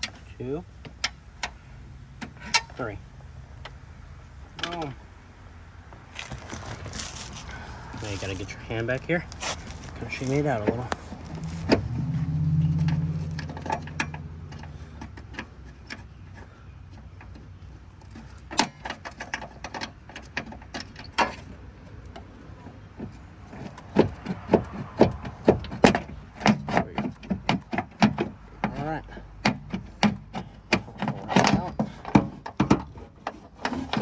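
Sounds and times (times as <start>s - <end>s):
low hum: 6.3s - 16.1s
metallic clicks and rattles: 10.6s - 28.7s.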